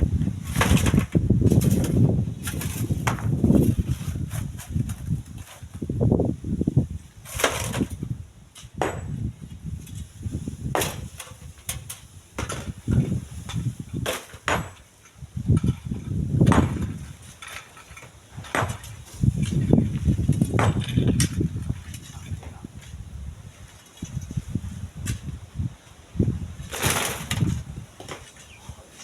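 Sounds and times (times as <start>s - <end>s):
wind buffeting microphone: 0.0s - 28.8s
sharp knocks: 8.8s - 9.2s, 14.0s - 14.8s, 18.4s - 19.0s, 20.5s - 21.2s.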